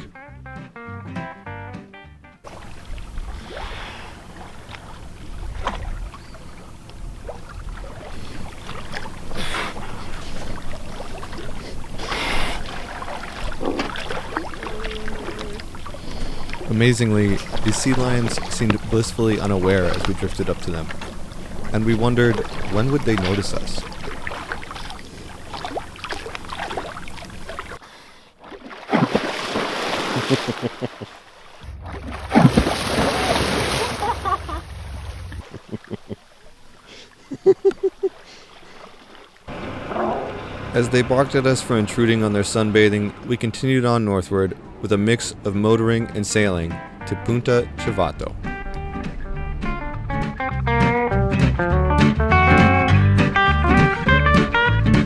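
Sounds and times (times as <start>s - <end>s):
water noise: 2.4s - 46.6s
wind: 2.4s - 50.0s
sea lions barking: 8.1s - 27.8s, 33.8s - 43.2s.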